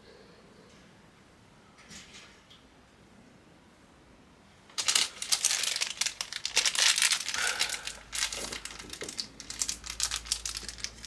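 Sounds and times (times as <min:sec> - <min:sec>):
packaging crinkling: 0:04.7 - 0:11.0.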